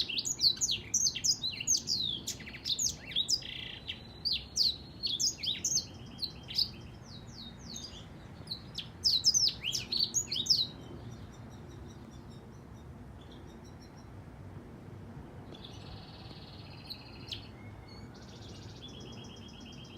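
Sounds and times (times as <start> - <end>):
canary chirping song: 0.0 - 14.2, 15.5 - 19.9.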